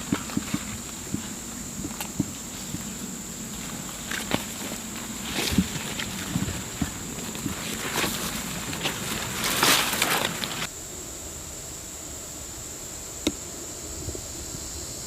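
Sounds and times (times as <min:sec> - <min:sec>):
rustling of grass and brush: 0:00.0 - 0:10.7
faint steady hiss: 0:00.0 - 0:15.0.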